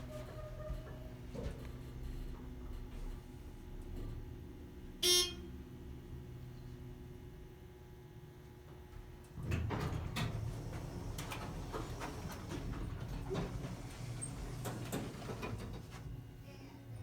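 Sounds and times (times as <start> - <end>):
elevator doors rumbling and clunking: 0.0 - 4.6, 8.7 - 16.4
elevator hum: 8.6 - 16.4.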